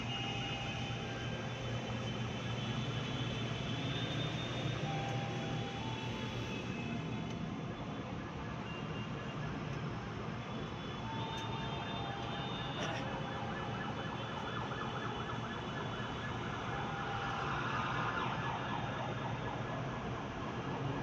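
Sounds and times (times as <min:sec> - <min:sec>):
train noise: 0:00.0 - 0:07.4.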